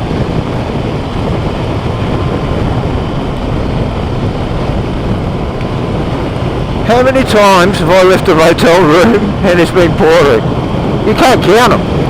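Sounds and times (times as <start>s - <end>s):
motorcycle engine: 0.0s - 7.8s
wind roar on microphone: 0.0s - 12.0s.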